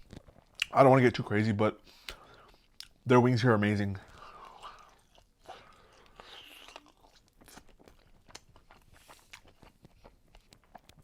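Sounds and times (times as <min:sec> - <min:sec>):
chewing crunches: 0:00.0 - 0:00.9, 0:04.0 - 0:11.0.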